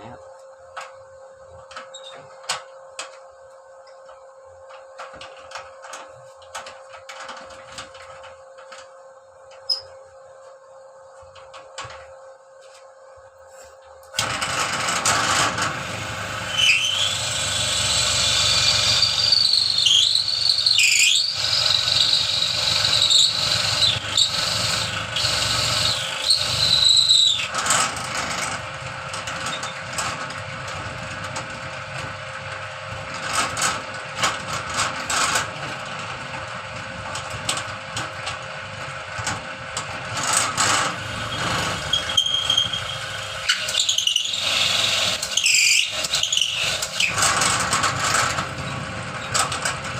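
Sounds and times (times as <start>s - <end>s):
high squeal of cutter: 9.7s - 9.9s, 15.8s - 28.4s, 41.1s - 47.6s
machine motor hum: 14.2s - 45.2s.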